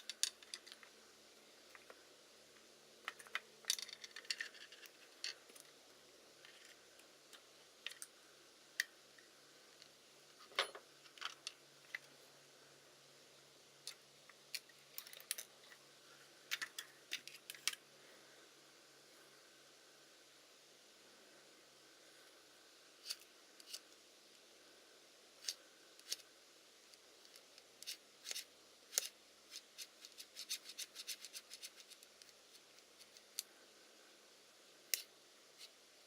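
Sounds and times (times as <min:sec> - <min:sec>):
small parts clicking and tapping: 0:00.0 - 0:01.0, 0:01.7 - 0:02.0, 0:02.6 - 0:05.8, 0:06.4 - 0:12.2, 0:13.8 - 0:15.8, 0:16.5 - 0:17.8, 0:23.0 - 0:24.0, 0:25.4 - 0:26.3, 0:26.9 - 0:33.5.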